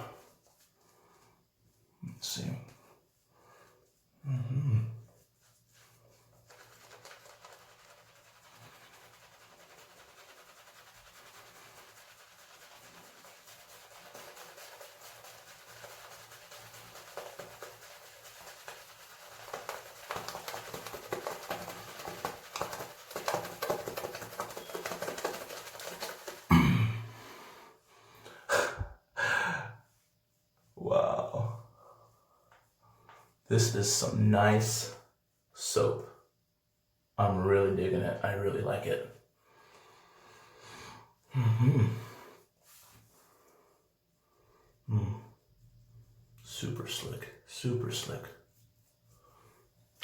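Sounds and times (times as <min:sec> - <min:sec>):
shaving brush whipping lather: 0:05.0 - 0:26.6.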